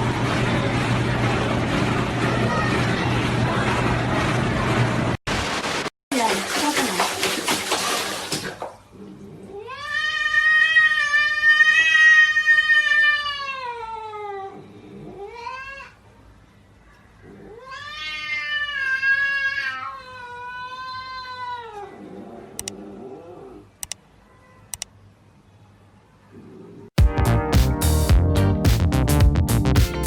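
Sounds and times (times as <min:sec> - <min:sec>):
cat yowling: 0:09.5 - 0:16.0, 0:17.2 - 0:22.0.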